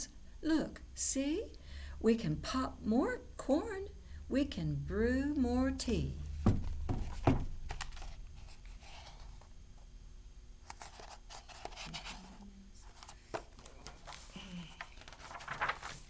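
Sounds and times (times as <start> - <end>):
book pages rustling: 6.9 - 9.5, 10.6 - 16.0.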